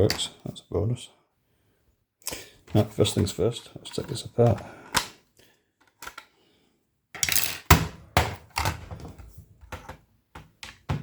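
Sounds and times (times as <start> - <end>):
plastic case clicking and knocking: 7.2 - 11.0.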